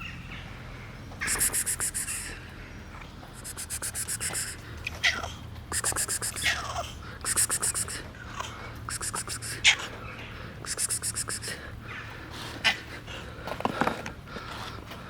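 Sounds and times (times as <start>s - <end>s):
cat coughing: 7.2s - 8.0s.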